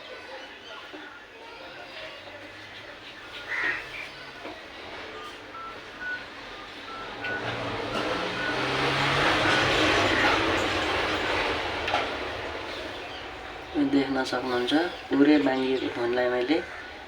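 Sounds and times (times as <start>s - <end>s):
vehicle passing by: 5.6s - 16.1s.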